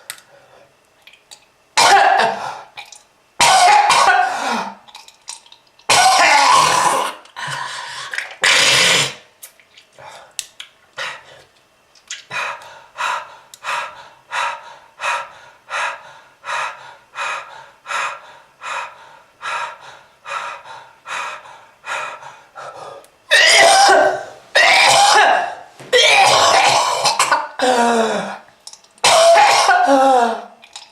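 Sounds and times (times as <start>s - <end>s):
person coughing: 1.8s - 2.6s, 3.4s - 4.8s, 5.9s - 7.2s, 23.3s - 28.4s, 29.0s - 30.5s
person panting rapidly: 12.3s - 23.0s.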